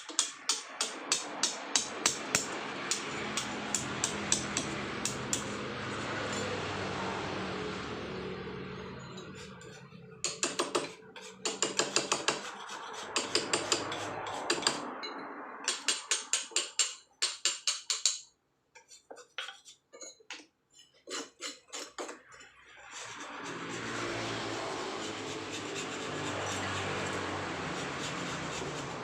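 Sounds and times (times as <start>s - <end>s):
hammer tapping chisel into stone: 10.2s - 12.5s, 13.2s - 14.8s, 15.7s - 19.6s.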